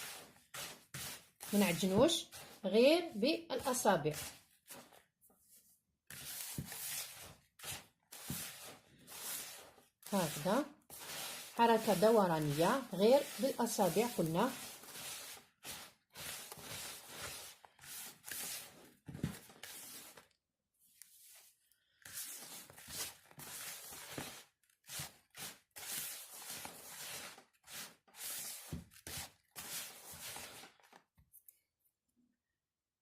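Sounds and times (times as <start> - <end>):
gritty rustling of semolina: 6.1 - 20.4, 21.1 - 31.0.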